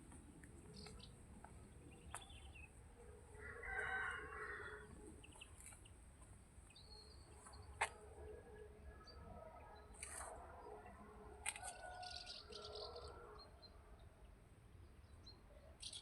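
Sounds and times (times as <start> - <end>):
faint rooster crowing: 3.3 - 5.1, 10.3 - 13.5
bird chirps: 11.6 - 13.8, 15.1 - 16.0.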